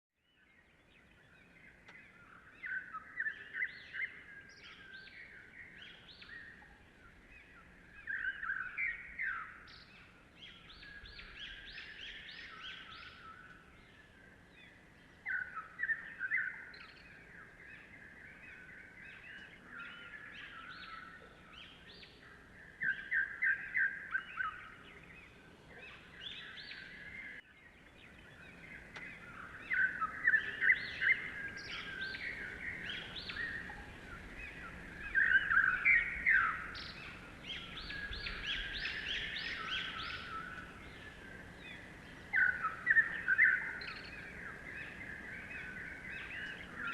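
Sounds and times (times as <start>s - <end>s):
birds chirping: 0.2s - 46.9s.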